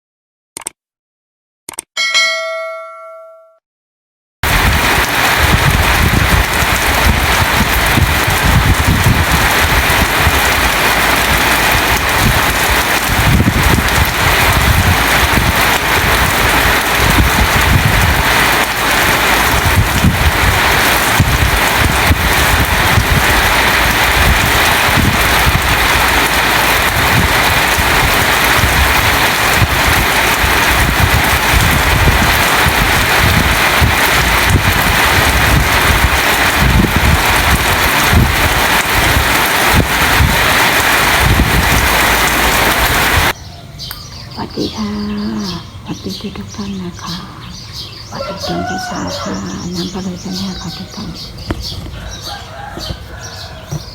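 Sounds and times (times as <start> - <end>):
bell-like chime: 2.0 - 3.6
heavy rain: 4.4 - 43.4, 44.6 - 53.9.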